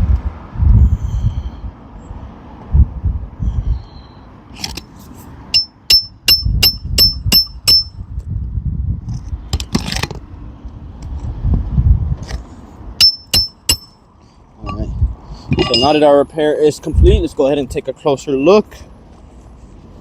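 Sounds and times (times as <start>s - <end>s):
scrape: 4.6s - 5.4s
hammer striking nail: 5.6s - 7.9s, 13.0s - 13.9s.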